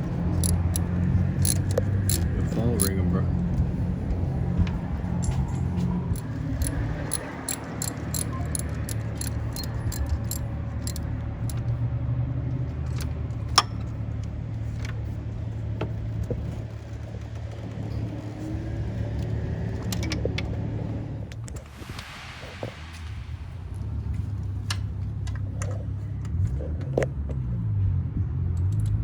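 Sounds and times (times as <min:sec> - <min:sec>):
car engine humming: 0:00.0 - 0:27.0
metallic clicks: 0:00.4 - 0:02.9, 0:05.2 - 0:11.7.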